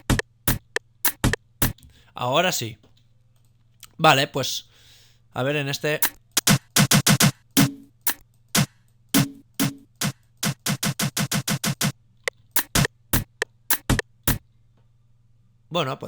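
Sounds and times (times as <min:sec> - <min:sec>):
drum and percussion hits: 0:00.0 - 0:01.8, 0:06.0 - 0:11.9, 0:12.5 - 0:14.4.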